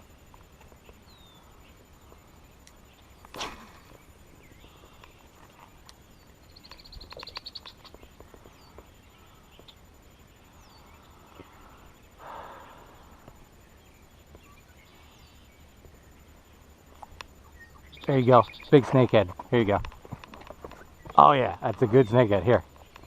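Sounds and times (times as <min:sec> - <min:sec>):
high falling bird chirps: 0:00.7 - 0:19.0.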